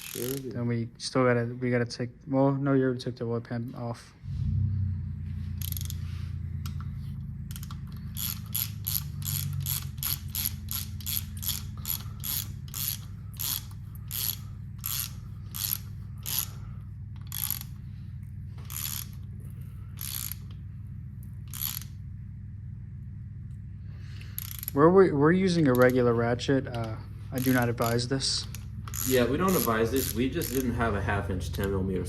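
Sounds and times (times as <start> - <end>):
ratchet wrench clicking: 0.0 - 0.6, 5.5 - 6.9, 7.5 - 17.8, 18.6 - 19.3, 19.9 - 20.6, 21.2 - 22.0, 24.2 - 24.9, 25.5 - 31.8.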